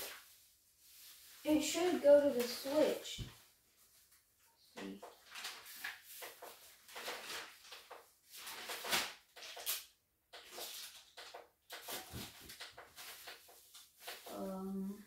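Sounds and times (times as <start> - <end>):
rustling and scraping of equipment: 0.0 - 9.8, 10.4 - 14.9.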